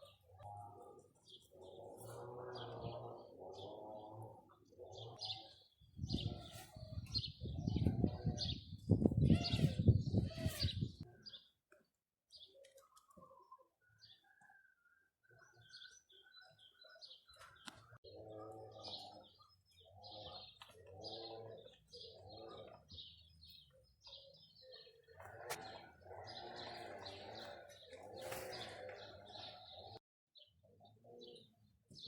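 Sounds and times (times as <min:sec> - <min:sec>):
doves cooing: 0:00.0 - 0:11.3, 0:24.1 - 0:30.0
small birds chirping: 0:00.0 - 0:32.0.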